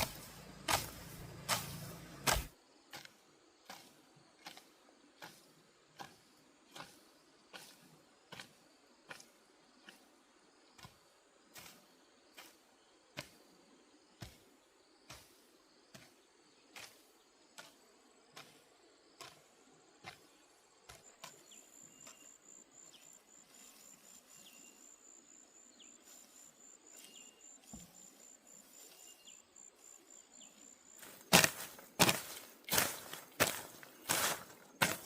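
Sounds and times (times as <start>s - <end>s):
insect trill: 17.5s - 35.0s.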